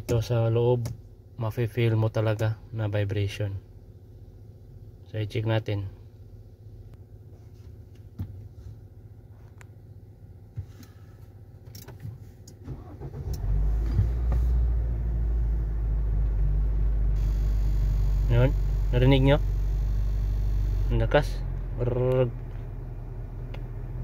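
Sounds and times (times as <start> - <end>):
engine idling: 12.7 - 24.0
heavy low engine drone: 13.3 - 24.0.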